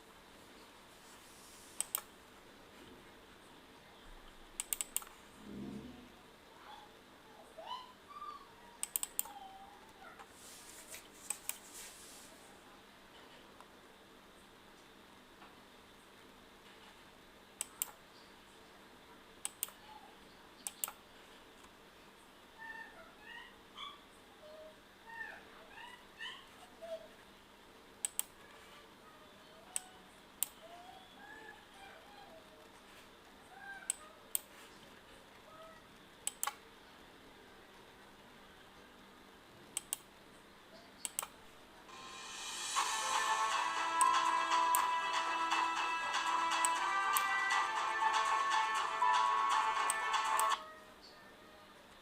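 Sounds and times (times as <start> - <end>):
faint room hiss: 0.0 - 52.0
computer mouse clicking: 1.8 - 2.1, 4.6 - 5.2, 8.8 - 9.4, 11.3 - 11.6, 17.6 - 18.0, 19.4 - 19.8, 20.6 - 21.0, 28.0 - 28.4, 36.2 - 36.6, 39.8 - 40.1, 41.0 - 41.4, 49.8 - 50.6
computer mouse double-clicking: 4.6 - 5.1, 8.8 - 9.3, 20.6 - 21.0, 36.2 - 36.6
music playing: 41.9 - 50.6.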